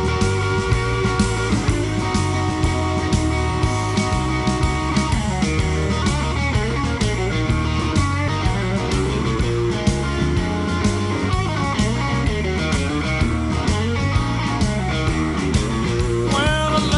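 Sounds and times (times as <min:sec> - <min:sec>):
blues-rock band music: 0:00.0 - 0:16.9.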